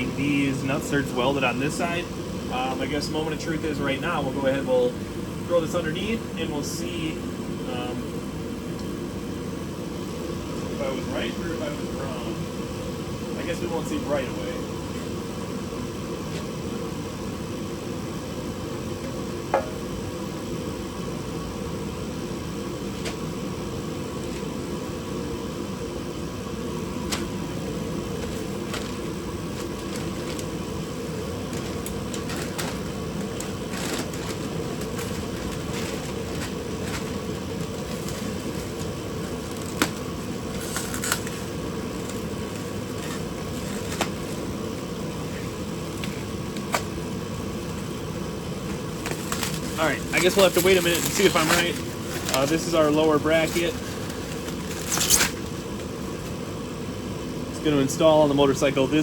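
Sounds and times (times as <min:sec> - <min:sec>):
fan humming: 0:00.0 - 0:59.0.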